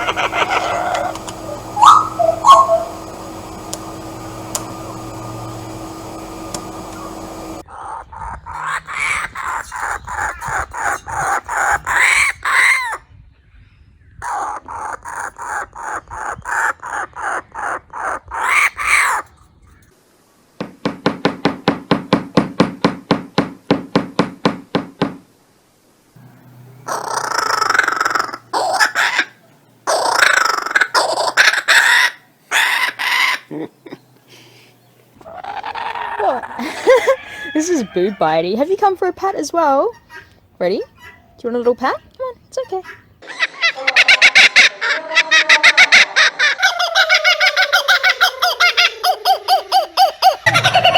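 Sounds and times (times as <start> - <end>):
kookaburra calling: 0.0 - 5.7, 7.0 - 13.0, 14.2 - 19.3, 26.8 - 34.0, 34.8 - 37.6, 45.9 - 50.9.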